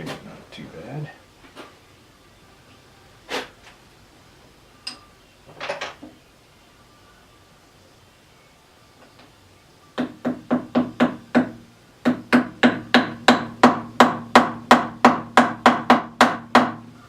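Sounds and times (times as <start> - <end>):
hammer tapping metal tool: 4.8 - 5.1.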